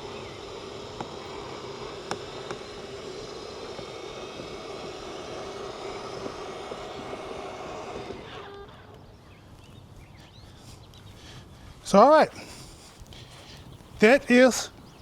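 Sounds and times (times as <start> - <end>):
electric motor humming: 0.0 - 9.5.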